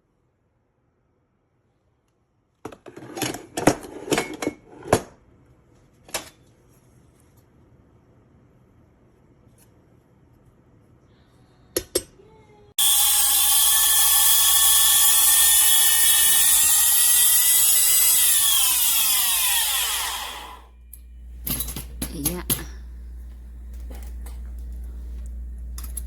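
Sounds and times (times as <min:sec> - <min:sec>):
grain mill motor whining: 0:12.8 - 0:20.8.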